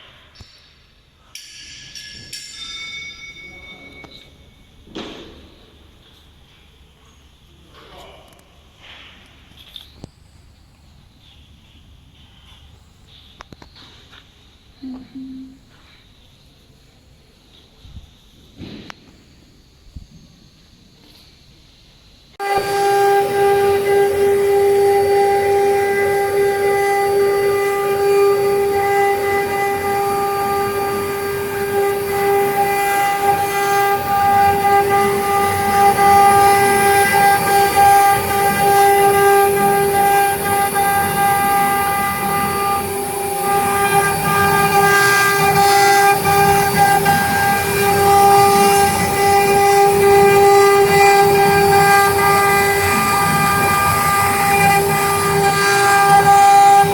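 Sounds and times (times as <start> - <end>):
cnc router spindle whining: 22.4 - 56.9.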